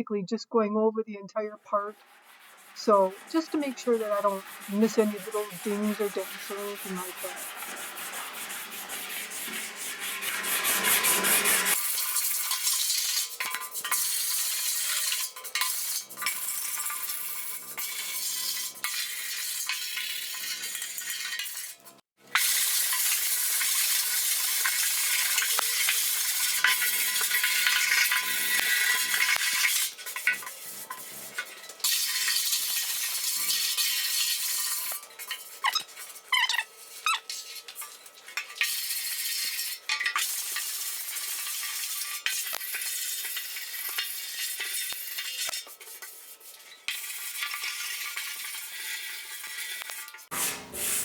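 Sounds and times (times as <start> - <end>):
sandpaper rubbing on metal: 1.9 - 11.8, 22.6 - 37.6, 38.7 - 51.0.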